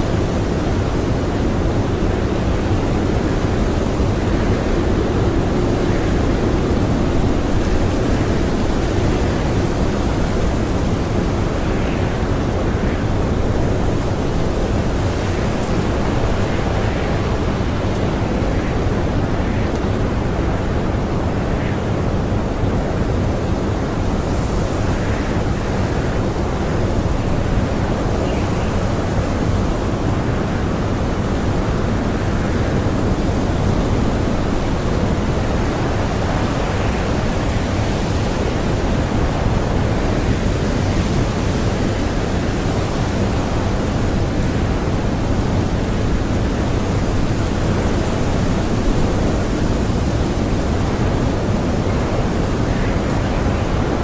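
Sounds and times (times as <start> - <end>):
blizzard wind rushing: 0.0 - 54.0.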